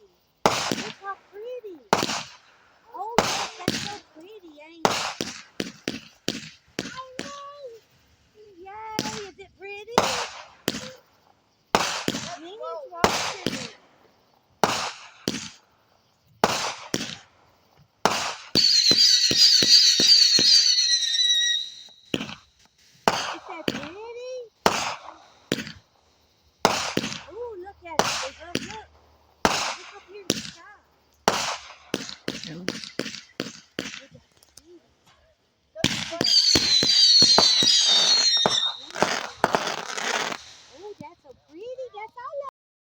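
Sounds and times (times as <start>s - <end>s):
crackling firework pops: 0.0s - 42.5s
firework bangs with echoes: 0.4s - 7.9s, 8.8s - 26.0s, 26.6s - 35.2s, 35.8s - 42.2s
high wavering whistle: 18.6s - 22.1s, 36.2s - 40.7s.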